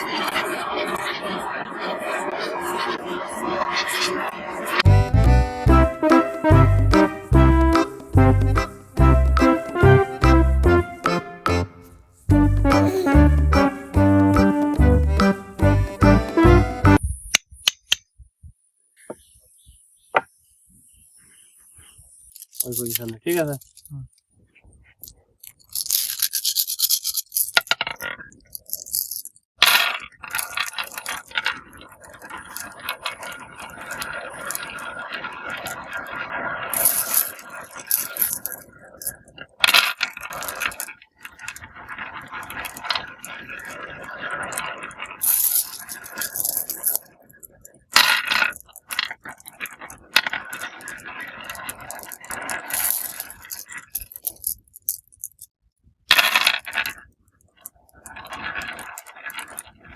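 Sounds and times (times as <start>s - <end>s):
marbles rolling on track: 25.0s - 55.5s, 56.1s - 59.9s
marbles clacking on track: 25.7s - 55.4s, 56.1s - 59.9s.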